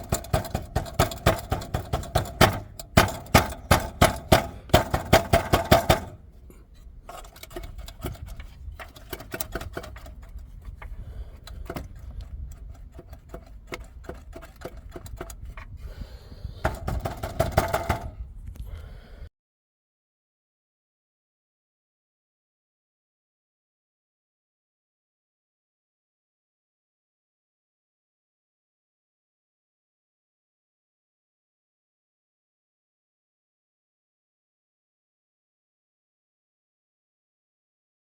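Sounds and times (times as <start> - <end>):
exhaust metallic rattling: 0.0 - 18.4.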